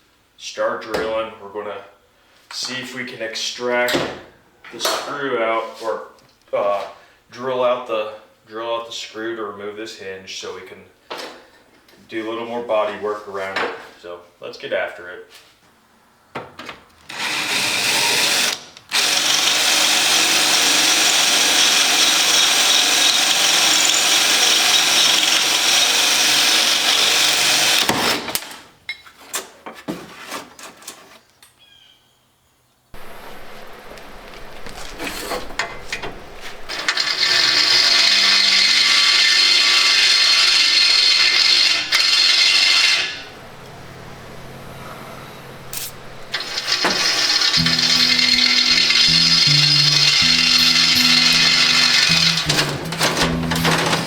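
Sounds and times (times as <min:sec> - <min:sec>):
electric drill drilling metal: 0:17.1 - 0:27.9, 0:45.8 - 0:48.2
clicks: 0:45.8 - 0:54.0.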